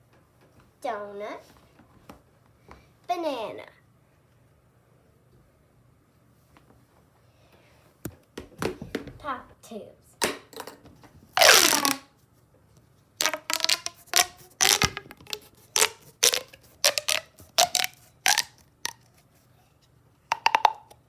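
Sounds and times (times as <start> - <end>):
plastic pop tubes popping: 10.2 - 10.8, 11.4 - 12.0, 13.2 - 19.1, 20.3 - 21.0.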